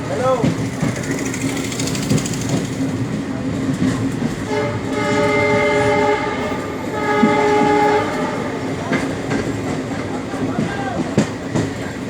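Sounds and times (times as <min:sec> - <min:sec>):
moving train noise: 0:00.0 - 0:12.0
train horn blasts: 0:04.4 - 0:08.8.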